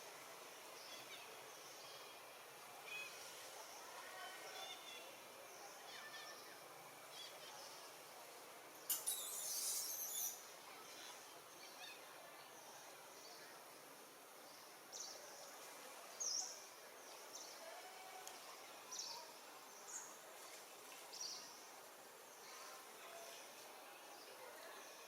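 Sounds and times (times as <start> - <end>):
faint outdoor hiss: 0.0 - 25.0
high-pitched animal chirps: 8.9 - 10.3.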